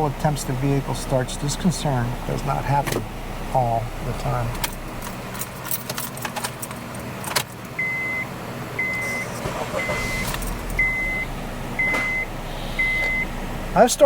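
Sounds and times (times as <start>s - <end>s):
high warning beeps: 7.8s - 13.3s.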